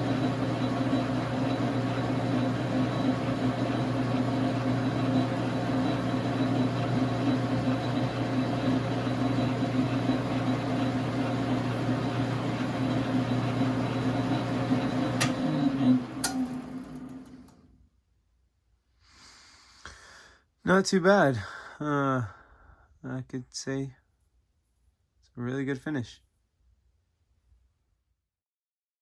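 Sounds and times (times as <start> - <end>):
lathe motor humming: 0.0 - 17.6.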